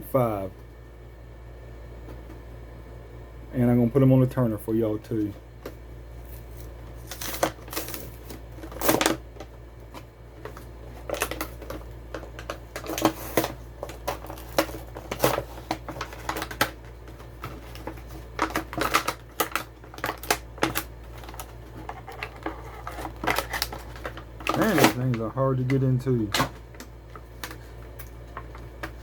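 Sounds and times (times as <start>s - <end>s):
plastic packaging crackling and tearing: 6.3s - 27.8s.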